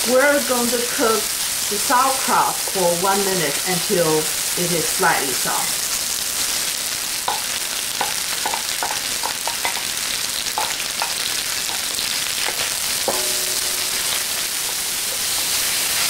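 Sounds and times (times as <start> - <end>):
food sizzling in hot oil: 0.0 - 16.0
utensil scraping pan: 10.6 - 16.0.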